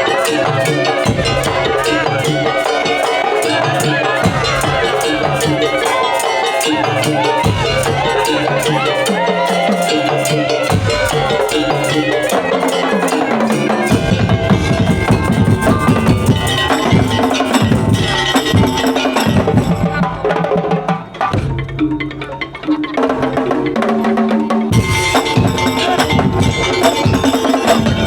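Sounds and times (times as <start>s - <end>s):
drums: 0.0s - 28.0s
wooden percussion: 0.0s - 28.0s.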